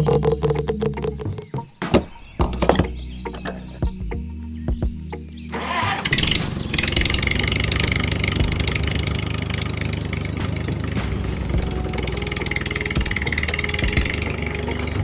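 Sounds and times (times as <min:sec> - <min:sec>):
small engine starting and running: 0:05.5 - 0:15.0.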